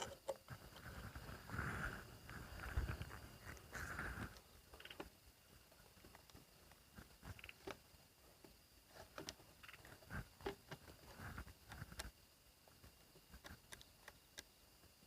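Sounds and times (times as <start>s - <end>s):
faint high-pitched hum: 0.0s - 15.0s
faint clicks: 6.0s - 7.8s, 8.4s - 12.2s, 13.2s - 14.6s.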